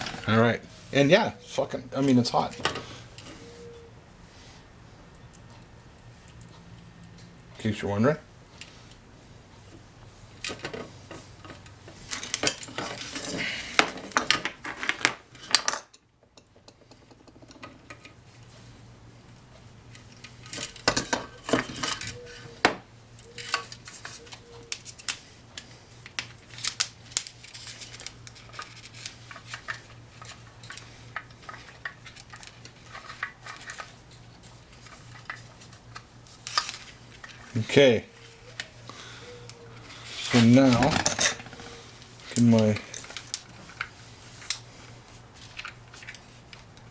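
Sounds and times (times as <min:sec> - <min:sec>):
metal tools clinking: 0:10.4 - 0:16.0, 0:40.0 - 0:43.9.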